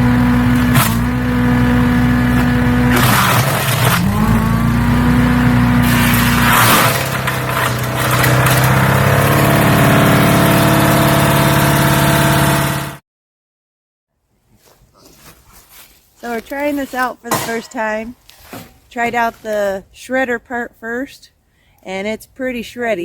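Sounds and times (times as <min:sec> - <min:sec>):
chipper engine running: 0:00.0 - 0:13.0
branches being ground up: 0:02.3 - 0:04.9, 0:05.5 - 0:09.6.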